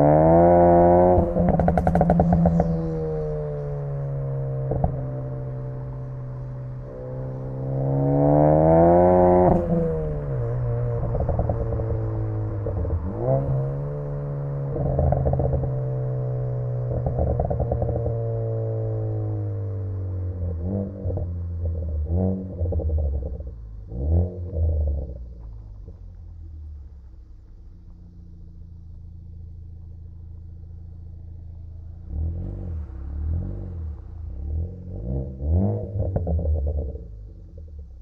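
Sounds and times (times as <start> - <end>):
car engine idling: 0.0 - 8.2, 25.0 - 38.0
car engine revving with exhaust pops: 0.0 - 38.0.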